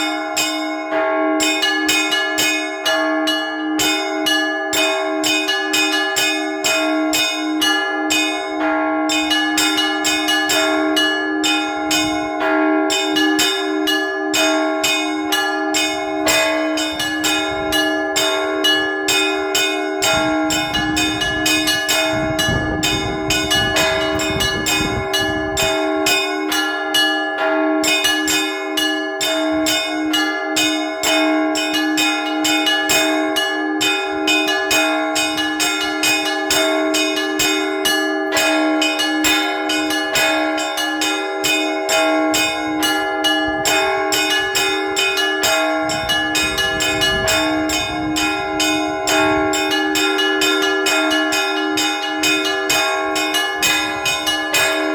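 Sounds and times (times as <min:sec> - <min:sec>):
lower bells ringing: 0:00.0 - 0:54.9
small bells struck quickly: 0:13.0 - 0:54.9.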